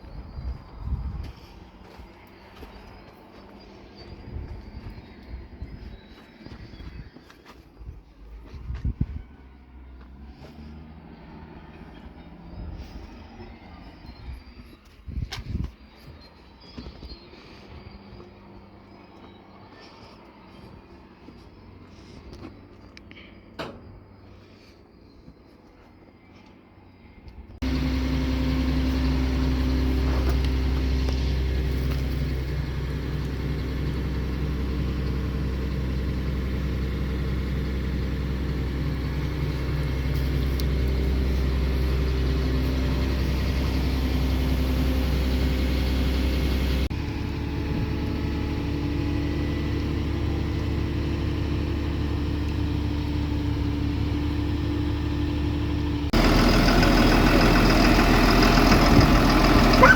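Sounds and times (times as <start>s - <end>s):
diesel engine idling: 0.0s - 14.8s, 27.6s - 59.9s.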